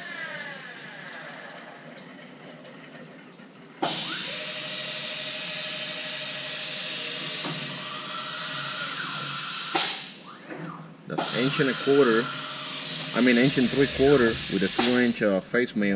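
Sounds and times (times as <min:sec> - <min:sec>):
milling machine running: 0:11.7 - 0:15.4
loud steady hiss: 0:13.2 - 0:15.9.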